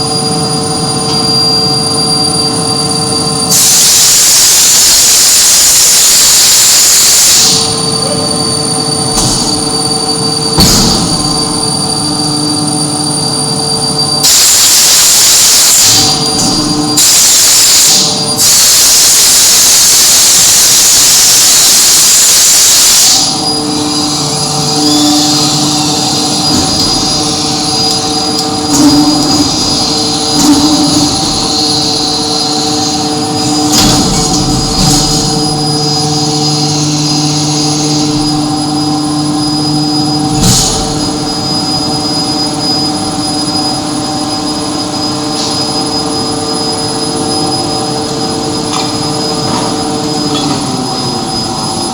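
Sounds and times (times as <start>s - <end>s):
loud hiss: 3.5s - 7.7s, 14.2s - 41.7s.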